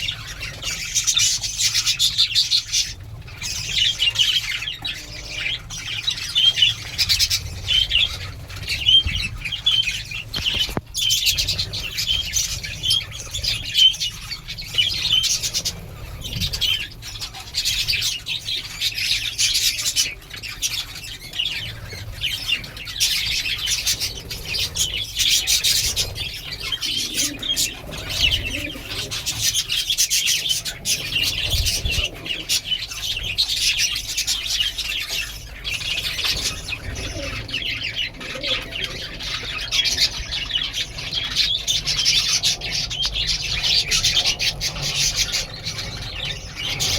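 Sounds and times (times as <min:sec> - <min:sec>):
small birds chirping: 0:00.0 - 0:46.9
wing flapping: 0:06.7 - 0:17.0.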